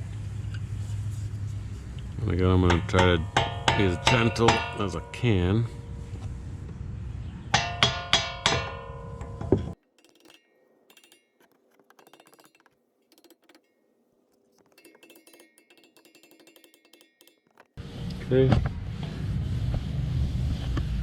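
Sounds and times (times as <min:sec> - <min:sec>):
mallet tapping on brake pad: 0:02.6 - 0:05.5.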